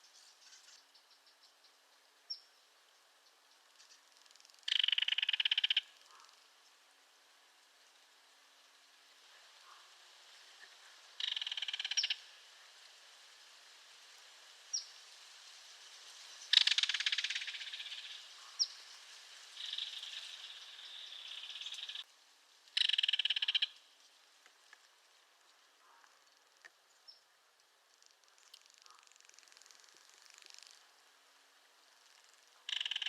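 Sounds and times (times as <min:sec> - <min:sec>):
bird buzzing call: 0:04.6 - 0:06.3, 0:11.2 - 0:12.2, 0:16.5 - 0:18.8, 0:19.6 - 0:22.0, 0:22.8 - 0:23.8, 0:28.5 - 0:30.8, 0:32.0 - 0:33.0
kingfisher rattle call: 0:04.7 - 0:06.1, 0:11.2 - 0:12.2, 0:16.5 - 0:18.7, 0:19.6 - 0:22.0, 0:22.8 - 0:23.8, 0:32.6 - 0:33.0.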